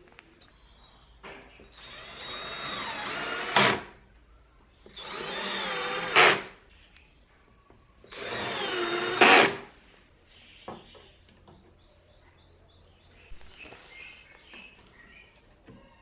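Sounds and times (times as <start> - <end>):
power drill running: 1.8 - 3.8, 5.0 - 6.4, 8.1 - 9.6.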